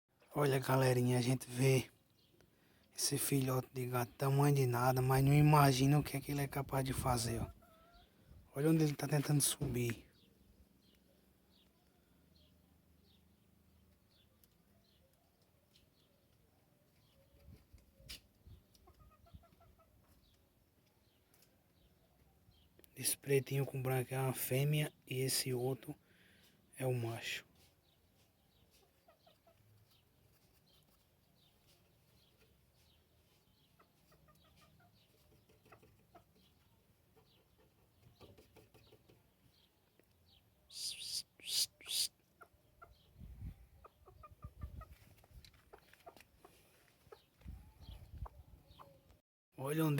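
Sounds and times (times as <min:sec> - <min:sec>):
faint bird chirping: 0:00.2 - 0:49.9
clucking bird-like calls: 0:07.3 - 0:08.2, 0:18.1 - 0:20.4, 0:28.7 - 0:31.0, 0:31.7 - 0:39.2, 0:40.8 - 0:49.1.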